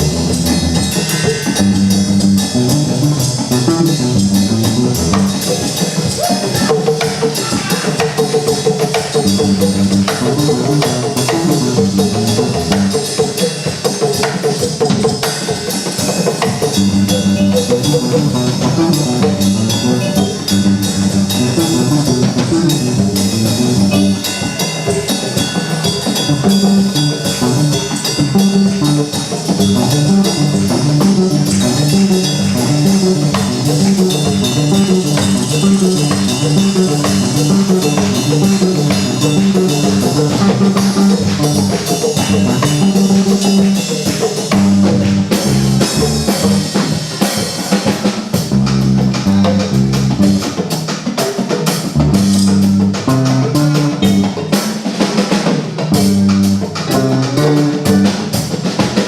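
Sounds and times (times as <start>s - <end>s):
repeating bass line: 0.0s - 5.4s, 16.7s - 24.2s, 26.3s - 43.8s
instrumental music with drums and guitar: 0.0s - 59.0s.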